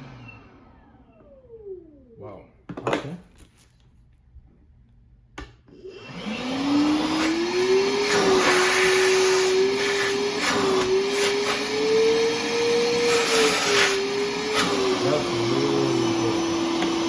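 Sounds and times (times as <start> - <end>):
vacuum motor whining: 0.0 - 2.2, 5.7 - 17.0.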